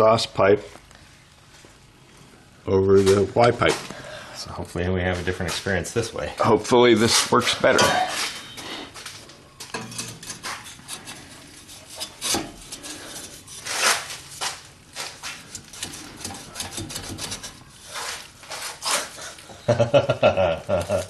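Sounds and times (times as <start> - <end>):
exhaust pipe scraping: 9.6 - 19.6.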